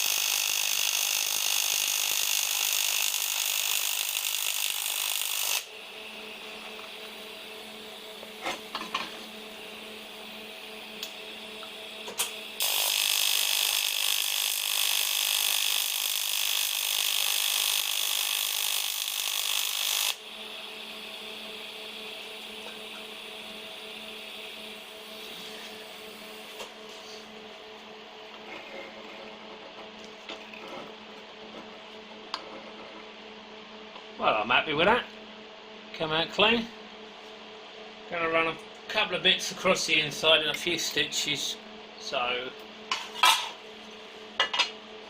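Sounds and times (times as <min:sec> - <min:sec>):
welding arc buzzing hiss: 0:00.0 - 0:33.2
steady low hum: 0:05.6 - 0:12.6, 0:20.2 - 0:45.0.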